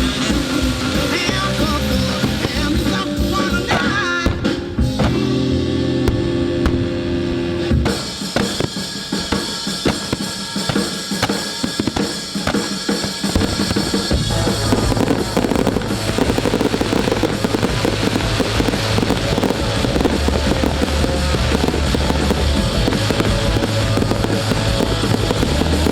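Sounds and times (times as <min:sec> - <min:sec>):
deep bass line: 0:00.0 - 0:03.7, 0:04.3 - 0:07.9, 0:13.4 - 0:25.9
drum kit beat: 0:00.0 - 0:25.9.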